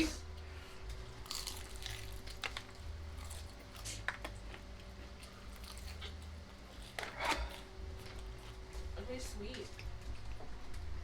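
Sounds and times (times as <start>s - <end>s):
person chewing food: 0.6s - 8.8s
crunching of fried crust: 0.6s - 8.9s.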